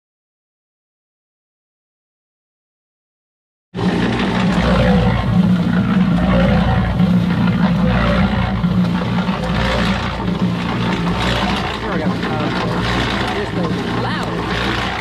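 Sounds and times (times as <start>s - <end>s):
concrete mixer motor hum: 3.8s - 15.0s
mixer drum churning rattle: 3.8s - 15.0s.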